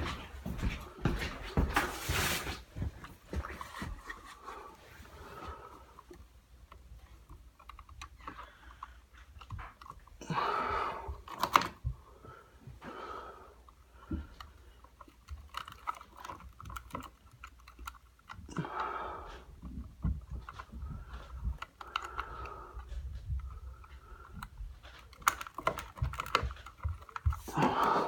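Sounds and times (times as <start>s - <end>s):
short rustle: 1.6s - 5.1s
small handling clicks and taps: 6.0s - 10.1s, 13.7s - 18.5s, 19.6s - 27.5s.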